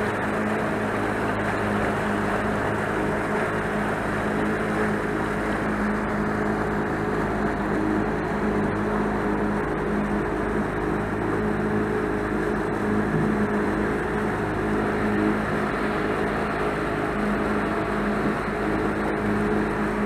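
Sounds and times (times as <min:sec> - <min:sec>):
motorboat engine running: 0:00.0 - 0:20.0
rush of wind and water: 0:00.0 - 0:20.0.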